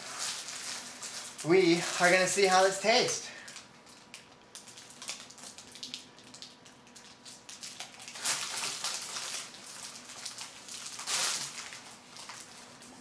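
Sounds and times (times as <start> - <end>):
gummy candy being chewed: 3.4 - 13.0.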